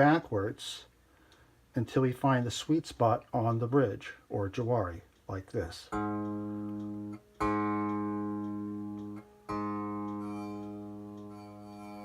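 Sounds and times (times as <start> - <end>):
buzzing plucked string: 5.9 - 12.0.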